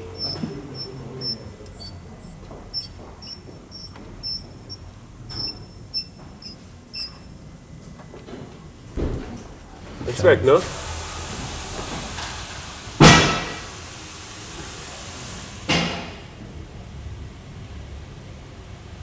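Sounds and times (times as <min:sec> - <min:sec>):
brake squeaking: 0:00.0 - 0:08.3.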